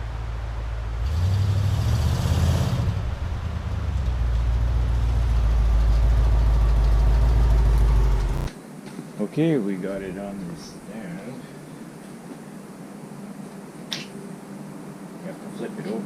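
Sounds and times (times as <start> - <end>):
machine motor humming: 6.2 - 8.5.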